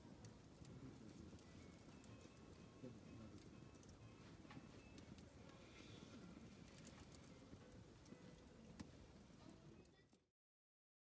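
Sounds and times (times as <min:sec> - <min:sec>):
campfire crackling and popping: 0:00.0 - 0:04.1, 0:06.2 - 0:10.1.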